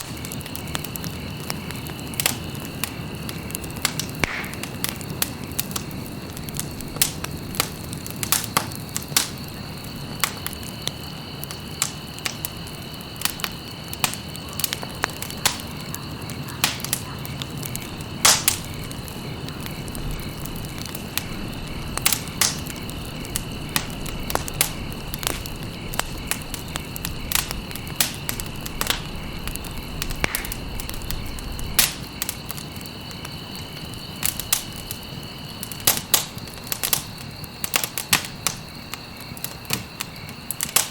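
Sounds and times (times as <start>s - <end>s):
wood fire crackling: 0.0s - 40.9s.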